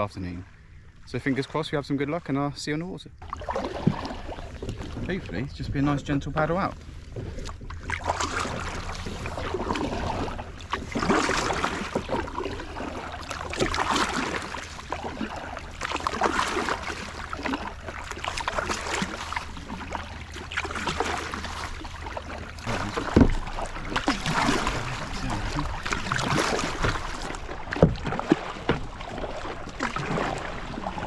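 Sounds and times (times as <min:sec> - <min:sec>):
kayak paddle splashing in water: 0:03.2 - 0:05.4, 0:06.8 - 0:31.0
thump: 0:23.1 - 0:23.4, 0:27.7 - 0:28.9.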